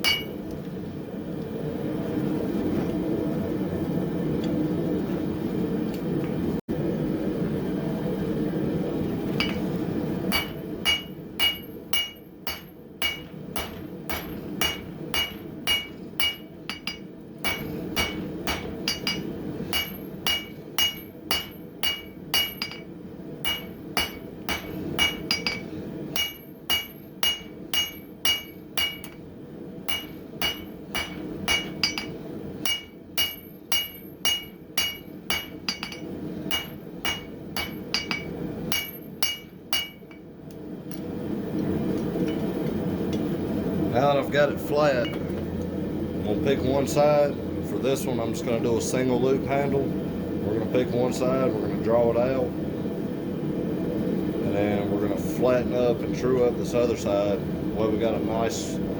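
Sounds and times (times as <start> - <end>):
hammer striking steel on anvil: 0.0 - 0.5, 9.3 - 9.7, 10.3 - 29.3, 29.9 - 40.3
gas forge roaring: 0.0 - 58.9.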